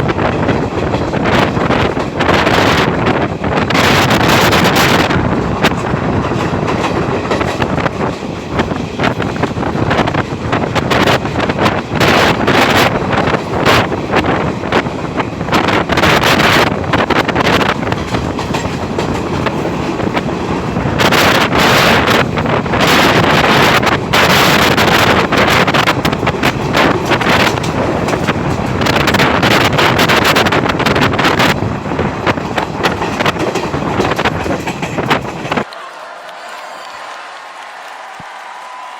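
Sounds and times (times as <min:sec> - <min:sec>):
wind buffeting microphone: 0:00.0 - 0:35.7
train running on rails: 0:00.0 - 0:38.9.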